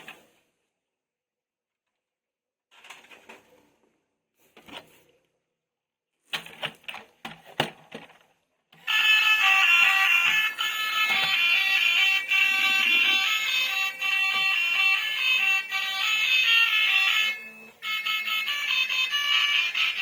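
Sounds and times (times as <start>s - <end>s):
electronic beeping tune: 9.9s - 20.0s.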